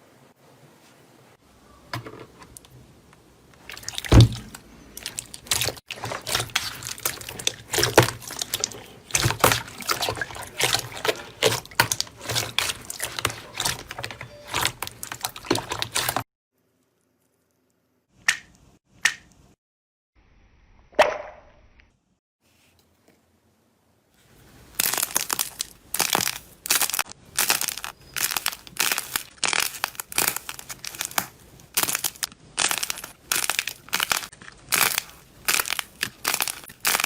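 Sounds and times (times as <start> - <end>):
slime squishing: 3.6 - 16.2, 24.6 - 37.0.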